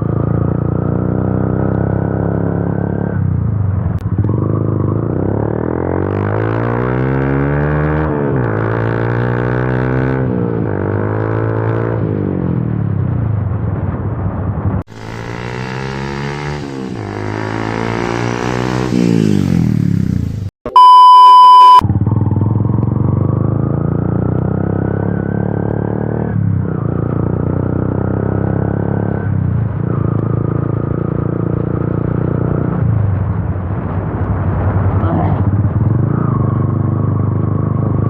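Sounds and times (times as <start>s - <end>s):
motorcycle engine accelerating: 0.0s - 13.0s, 14.9s - 38.0s
steady electronic beep: 20.6s - 21.8s.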